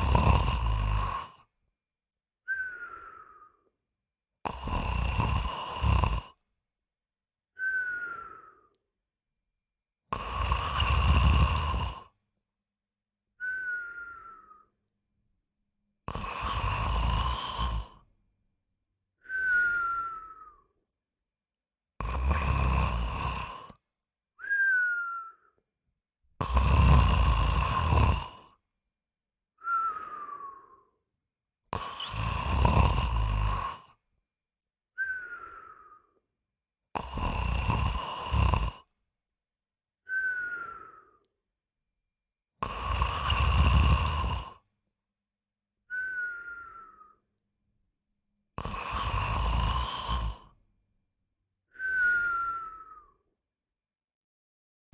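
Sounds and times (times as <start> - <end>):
person snoring: 0.0 - 1.5, 4.5 - 6.4, 10.1 - 12.1, 16.1 - 18.1, 22.0 - 23.8, 26.4 - 28.6, 31.7 - 34.0, 37.0 - 38.9, 42.6 - 44.6, 48.6 - 50.6
falling whistle: 2.5 - 3.4, 7.6 - 8.6, 13.4 - 14.7, 19.3 - 20.6, 24.4 - 25.5, 29.6 - 30.7, 35.0 - 36.0, 40.1 - 41.2, 45.9 - 47.2, 51.8 - 53.2.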